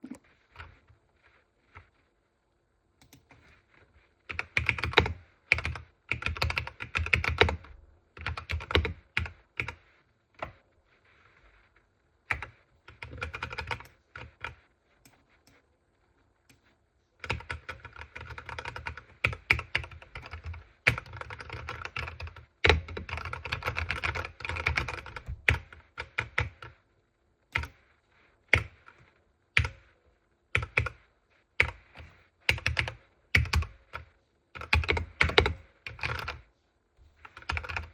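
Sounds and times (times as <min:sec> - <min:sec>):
keyboard typing clicks: 0:03.0 - 0:03.4, 0:34.6 - 0:36.4.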